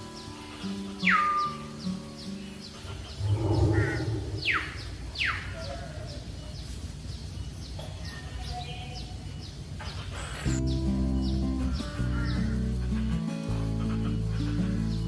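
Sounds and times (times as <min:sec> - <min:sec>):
outdoor background noise: 0:00.0 - 0:15.0
short high bird chirps: 0:03.1 - 0:05.5.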